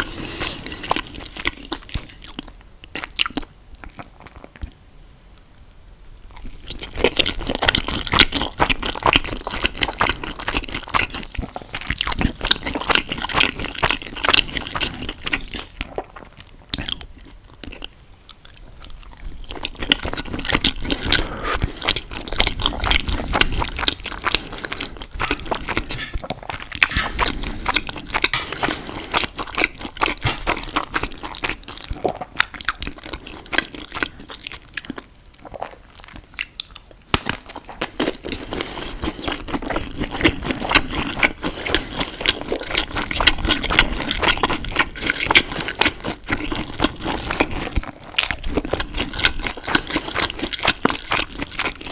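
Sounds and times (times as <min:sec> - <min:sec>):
close chewing and mouth sounds: 0:00.0 - 0:51.9.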